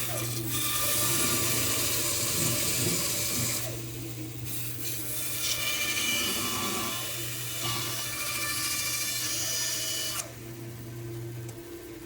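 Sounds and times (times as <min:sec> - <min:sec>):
bandsaw cutting wood: 0:00.0 - 0:03.8, 0:04.8 - 0:10.2.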